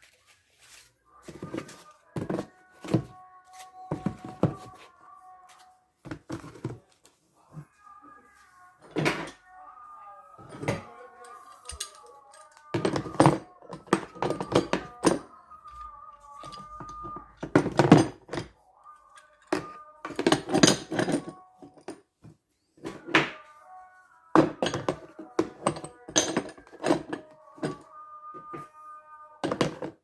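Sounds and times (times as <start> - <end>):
hard objects knocking and clattering: 1.3 - 3.1, 3.9 - 4.8, 6.0 - 6.8, 10.4 - 10.9, 11.6 - 15.8, 16.4 - 18.5, 19.4 - 23.4, 24.4 - 28.7, 29.4 - 30.0.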